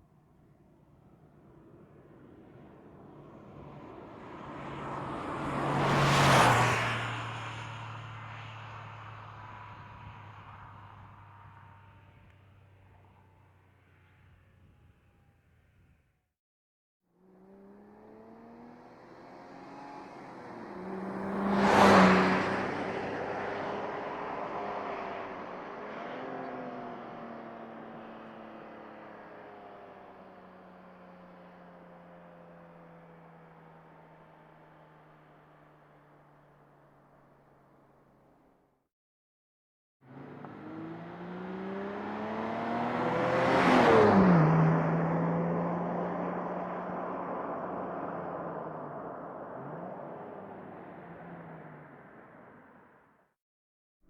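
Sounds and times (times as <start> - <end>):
car engine passing by: 2.3 - 13.4, 17.3 - 32.2, 40.1 - 53.0.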